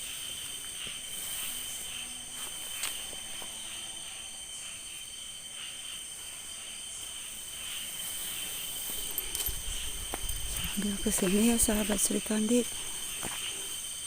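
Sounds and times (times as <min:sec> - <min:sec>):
crickets trilling: 0:00.0 - 0:14.0
insect chirps: 0:00.0 - 0:14.0.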